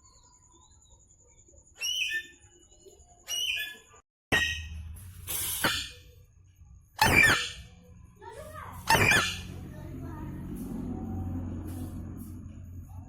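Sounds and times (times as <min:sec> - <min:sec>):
parrot squawking: 0:03.3 - 0:04.8, 0:07.0 - 0:07.8, 0:08.8 - 0:09.6.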